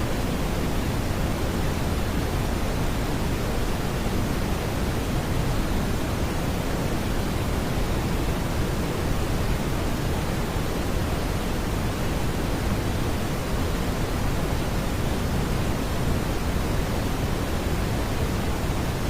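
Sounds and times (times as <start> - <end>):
brown noise hiss: 0.0 - 19.0.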